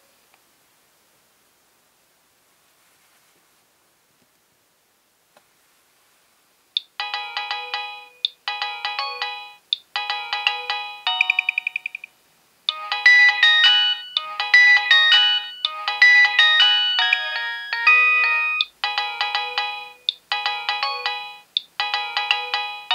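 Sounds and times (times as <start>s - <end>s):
mobile phone melodic ringtone: 7.0s - 12.1s, 12.7s - 22.9s.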